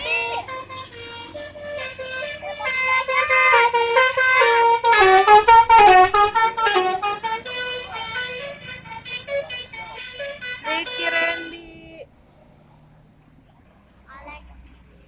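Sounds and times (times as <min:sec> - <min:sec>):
musical bus horn melody: 0:00.0 - 0:11.7.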